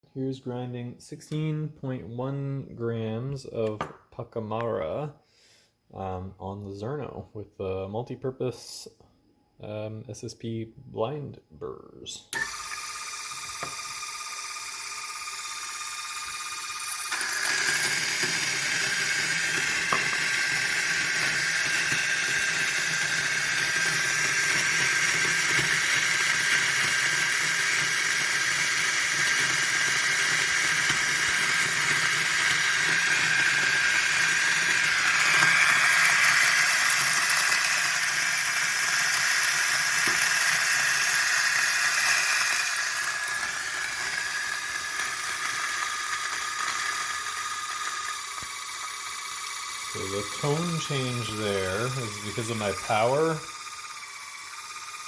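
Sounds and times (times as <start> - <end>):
coffee grinder whining and grinding: 12.3 - 55.0.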